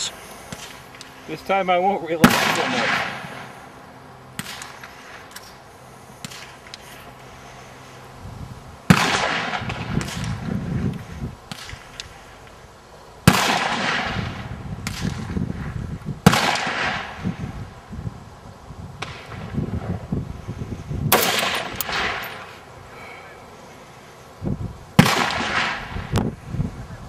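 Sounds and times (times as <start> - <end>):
rifle shots with rumbling echo: 2.2 - 3.5, 8.9 - 10.5, 13.2 - 15.4, 16.2 - 17.2, 21.1 - 22.5, 25.0 - 26.2.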